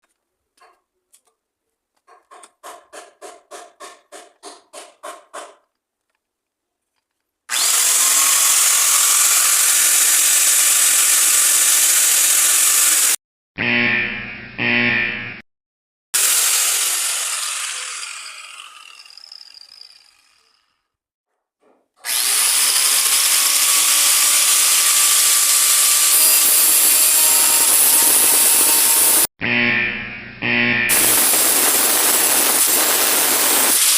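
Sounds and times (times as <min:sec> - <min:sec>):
angle grinder running: 0:07.5 - 0:13.2, 0:16.2 - 0:20.8, 0:22.0 - 0:29.3, 0:30.9 - 0:33.9.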